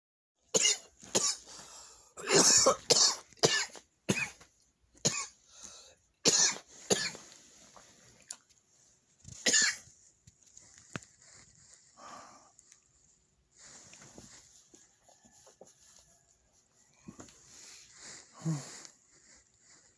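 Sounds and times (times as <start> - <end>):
person coughing: 0.6 - 1.4, 2.2 - 4.4, 6.3 - 7.2, 9.5 - 9.8.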